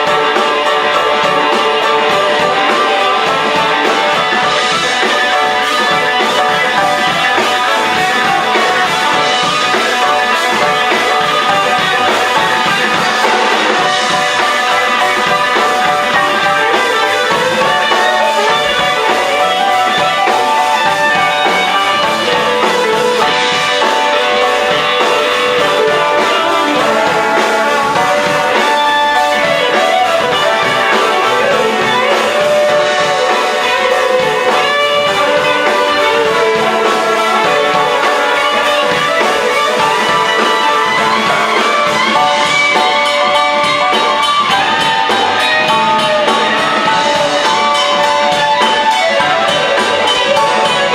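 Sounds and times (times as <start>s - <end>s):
electric guitar: 0.0s - 50.9s
live band playing: 0.0s - 50.9s.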